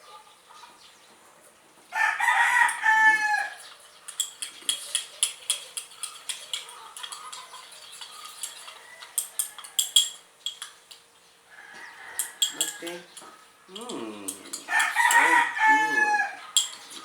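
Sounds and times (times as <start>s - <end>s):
spoon clinking in a bowl: 3.6s - 11.1s, 12.1s - 17.0s.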